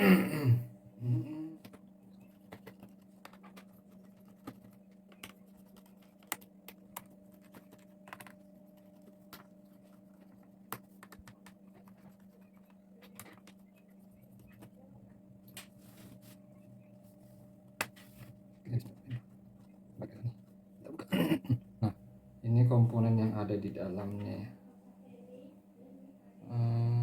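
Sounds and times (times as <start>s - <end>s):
steady low hum: 0.0s - 27.0s.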